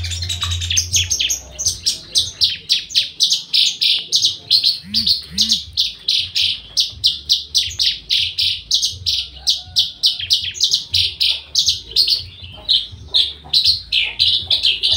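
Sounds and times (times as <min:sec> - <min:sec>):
bird singing high chirping notes: 0:00.0 - 0:09.7.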